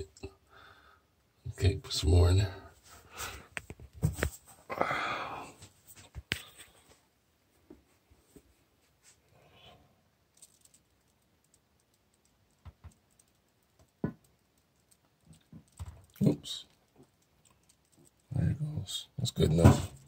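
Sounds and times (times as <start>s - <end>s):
plastic clicks and knocks: 12.5s - 14.4s.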